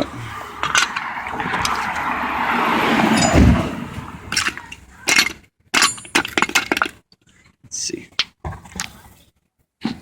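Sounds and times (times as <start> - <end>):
metal scraping rush: 0.0 - 4.8
metal parts clinking and knocking: 0.6 - 1.8, 4.3 - 7.0
heavy thud: 3.1 - 4.3.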